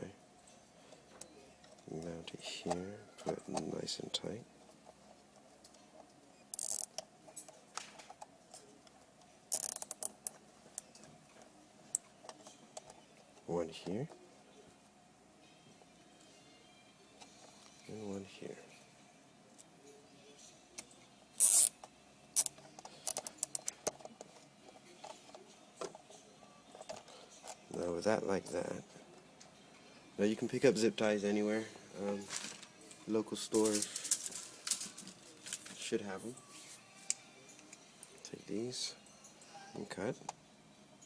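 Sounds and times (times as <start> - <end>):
rapid ratchet clicks: 6.6 - 6.9, 9.5 - 10.2
zip tie zipping rasps: 6.6 - 6.9, 21.4 - 21.7
small handling clicks: 6.6 - 7.0, 9.5 - 10.3, 22.4 - 24.0.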